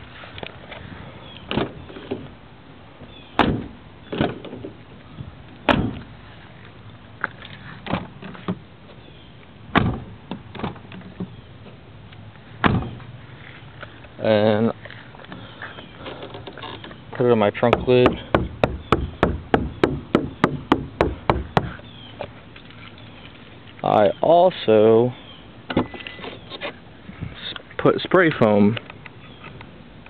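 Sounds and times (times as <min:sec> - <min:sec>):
sharp thumps on car panels: 0:03.4 - 0:04.8, 0:05.6 - 0:06.1, 0:09.7 - 0:11.3, 0:12.6 - 0:13.0, 0:17.6 - 0:21.8.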